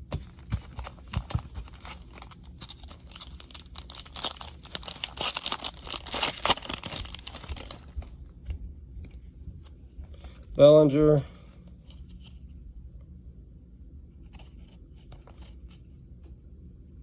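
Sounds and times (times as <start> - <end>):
cards and foil wrapper crinkling: 0.1 - 8.4.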